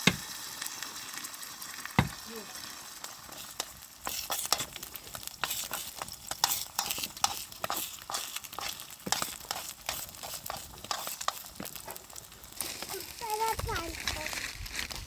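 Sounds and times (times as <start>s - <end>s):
food sizzling in a pan: 0.0s - 15.0s
stirring scraping clicks: 3.3s - 12.2s.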